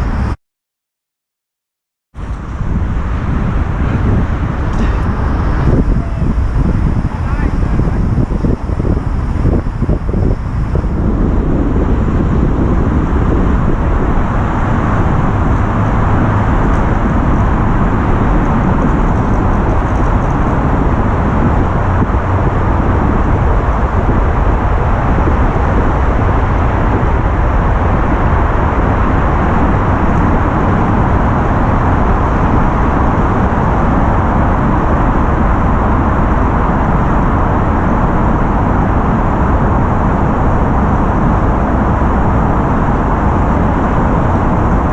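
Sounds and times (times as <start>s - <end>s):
wind rushing on microphone: 0.0s - 0.4s, 2.2s - 44.9s
tyres on wet road: 2.2s - 8.4s.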